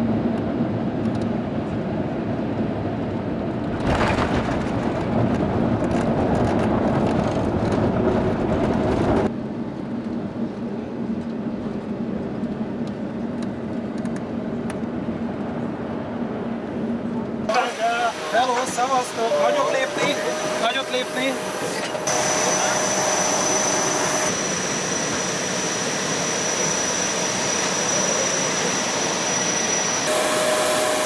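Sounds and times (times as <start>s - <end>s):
constant low hum: 0.0s - 17.6s
airplane cabin engine rush: 0.0s - 31.0s.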